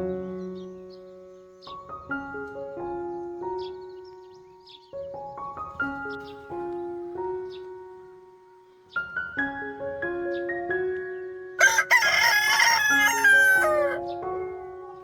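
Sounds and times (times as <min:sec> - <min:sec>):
soft piano music: 0:00.0 - 0:15.0
rooster crowing: 0:11.6 - 0:14.0.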